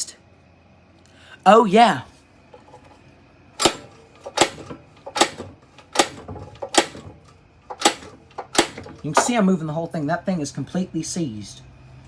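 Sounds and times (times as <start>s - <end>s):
pull-start cord clacking: 3.6s - 9.4s.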